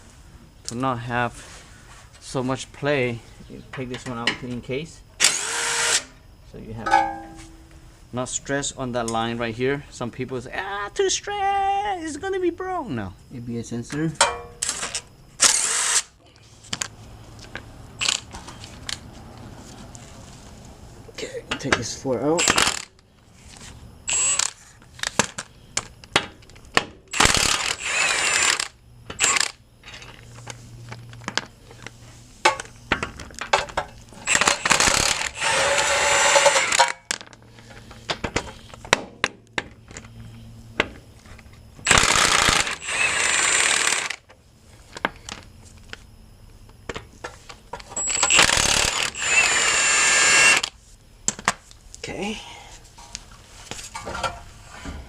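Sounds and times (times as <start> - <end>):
impact wrench: 5.2 - 6.1, 14.7 - 16.1, 18.0 - 18.2, 22.4 - 22.9, 24.1 - 24.6, 27.1 - 29.6, 34.2 - 37.0, 41.8 - 44.2, 48.0 - 50.7
metal clinks of bolts: 6.8 - 7.4.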